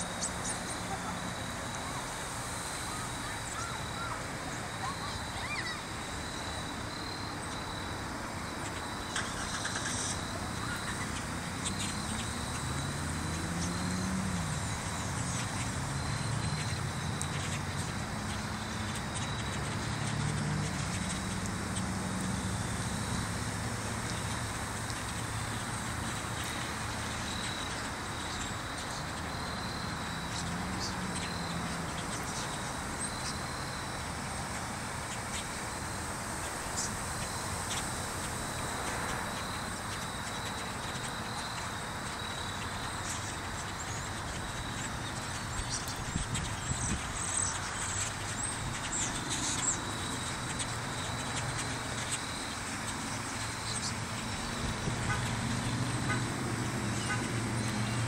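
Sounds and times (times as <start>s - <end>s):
flock of birds chattering: 0.0s - 58.0s
sharp bird chirps: 2.7s - 23.2s.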